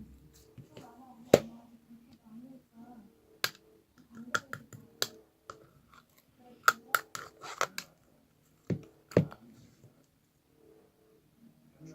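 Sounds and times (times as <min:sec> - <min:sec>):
small objects clicking and tapping: 0:03.4 - 0:07.9.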